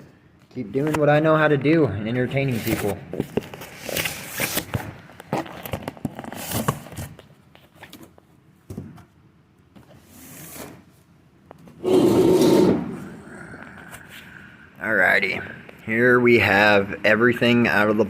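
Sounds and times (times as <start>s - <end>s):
loud scraping rush: 11.8s - 13.3s.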